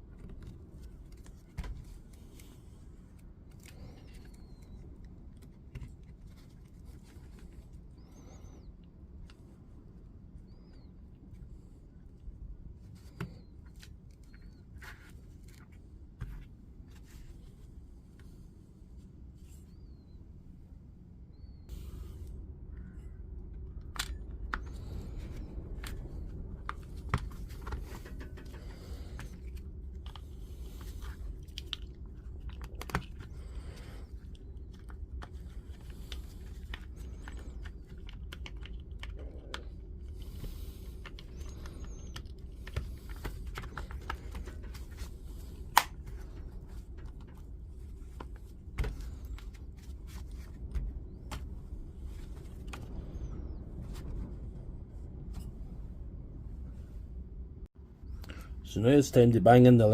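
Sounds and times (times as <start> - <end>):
steady low hum: 0.0 - 59.9
plastic parts clicking and rattling: 34.1 - 47.4.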